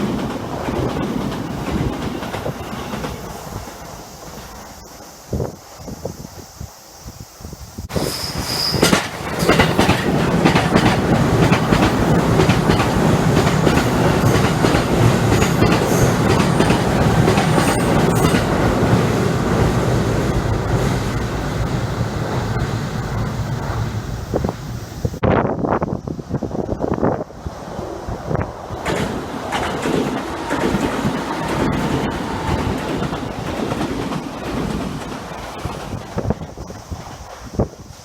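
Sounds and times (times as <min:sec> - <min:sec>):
wheels clicking over rail joints: 0:00.0 - 0:04.8, 0:07.9 - 0:25.2, 0:28.4 - 0:38.0
electric train running past: 0:00.0 - 0:38.0
high squeal: 0:07.9 - 0:09.1, 0:15.4 - 0:25.2.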